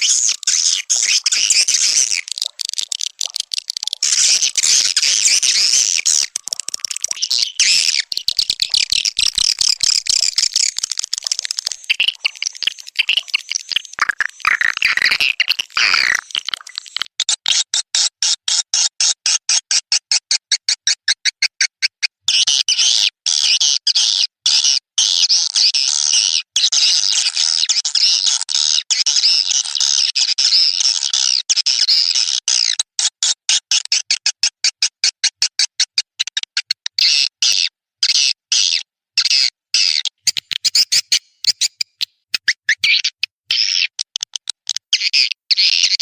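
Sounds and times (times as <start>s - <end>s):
swiftlets chirping and twittering: 0.0s - 17.0s.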